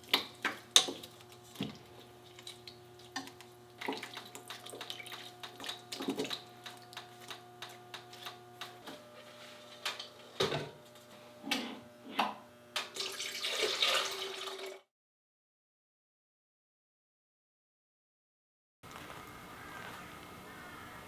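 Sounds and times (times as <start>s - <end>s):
water running and splashing: 0.0s - 8.5s, 13.0s - 14.8s
electrical hum: 0.0s - 13.3s
containers clinking: 12.8s - 14.8s.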